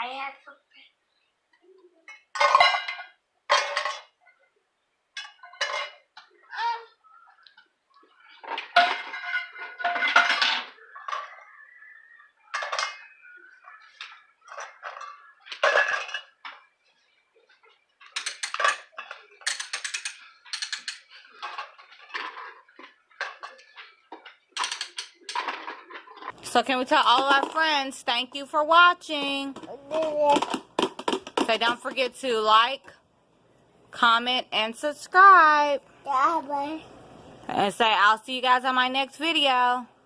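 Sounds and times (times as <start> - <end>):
toy pots and pans clattering: 2.1 - 4.3, 5.2 - 6.4, 8.3 - 16.7, 17.5 - 32.1.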